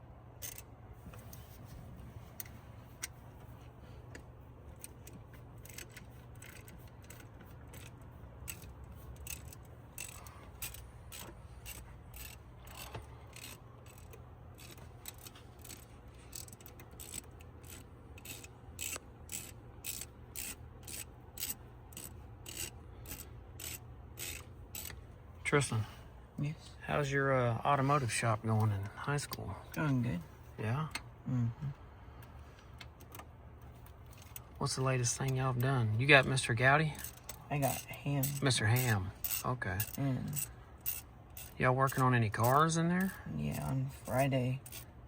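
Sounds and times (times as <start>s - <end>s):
steady low hum: 0.0s - 45.0s
socket ratchet clicking: 0.4s - 0.7s, 4.8s - 25.0s, 37.0s - 43.1s, 44.0s - 44.9s.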